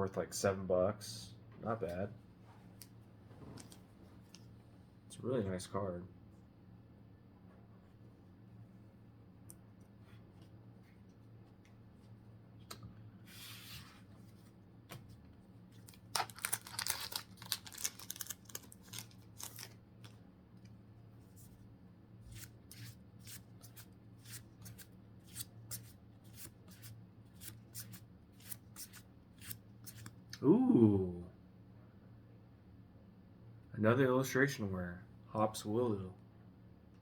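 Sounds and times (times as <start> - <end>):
foil wrapper crinkling and tearing: 15.8 - 20.2.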